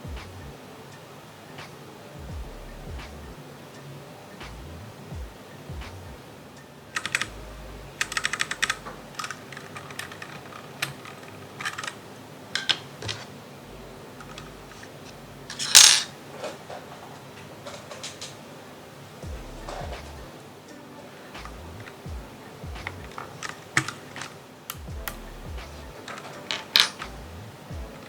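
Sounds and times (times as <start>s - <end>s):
mechanical keyboard keys clacking: 6.9s - 13.3s, 21.2s - 28.0s.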